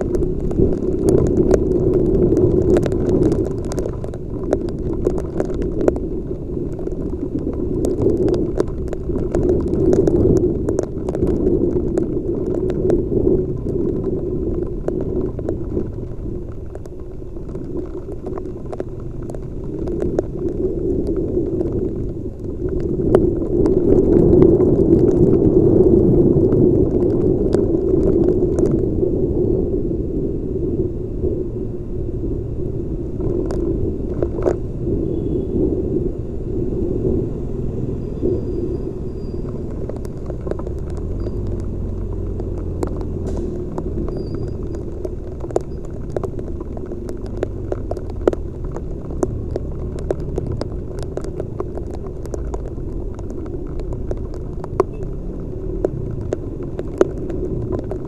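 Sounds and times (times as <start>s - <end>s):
muffled motorcycle rumble: 0.0s - 58.0s.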